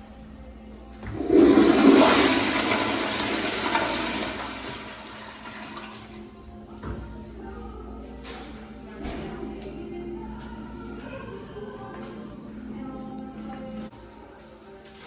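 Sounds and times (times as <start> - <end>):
toilet flushing: 1.0 - 6.5.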